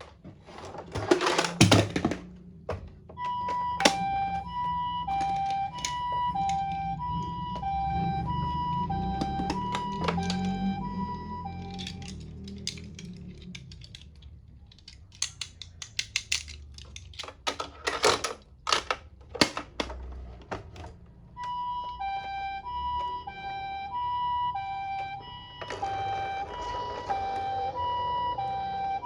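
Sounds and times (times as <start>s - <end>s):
toy electronic siren: 3.0s - 14.0s, 21.2s - 29.0s
sharp clicks and knocks: 8.8s - 10.8s, 11.5s - 21.5s.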